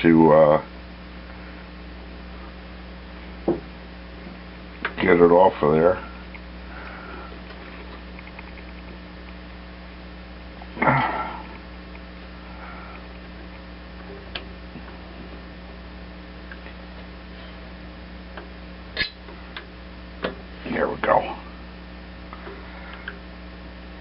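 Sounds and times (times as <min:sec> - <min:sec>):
steady low hum: 0:00.0 - 0:24.0
person breathing: 0:06.1 - 0:07.5, 0:12.4 - 0:13.2, 0:22.4 - 0:23.1.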